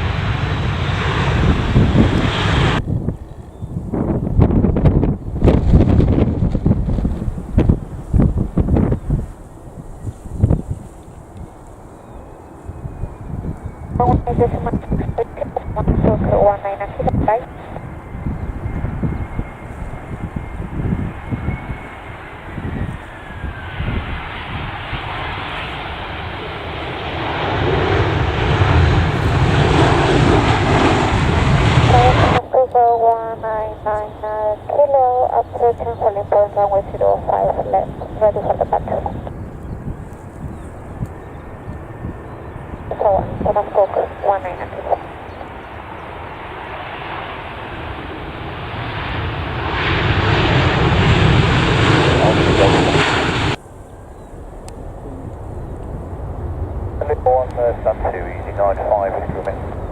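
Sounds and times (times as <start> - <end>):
wind rumbling on microphone: 0.0 - 46.4, 47.1 - 59.9
aircraft engines: 0.0 - 59.9.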